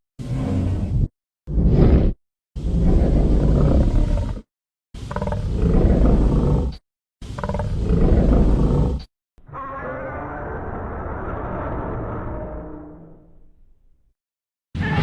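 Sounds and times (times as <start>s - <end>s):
dull roar-like sound: 0.2s - 4.5s, 5.1s - 6.8s, 7.4s - 13.3s
loud monster roar: 7.8s - 13.0s.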